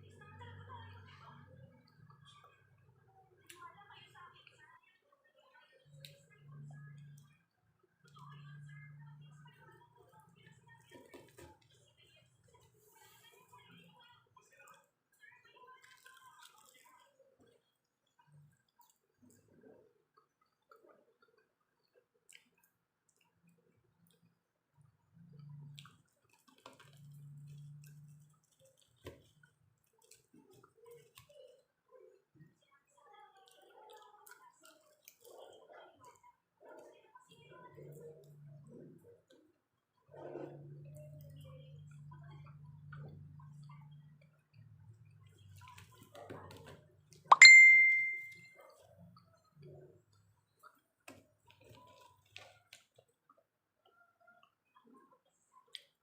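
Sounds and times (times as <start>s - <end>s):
person chewing fries: 25.7s - 31.3s.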